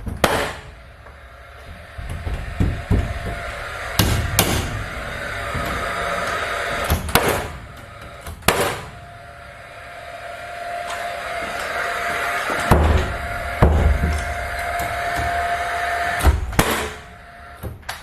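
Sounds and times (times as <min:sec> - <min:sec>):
nail gun firing into wood: 0:00.2 - 0:00.7, 0:06.9 - 0:07.6, 0:08.2 - 0:08.9, 0:16.2 - 0:17.0.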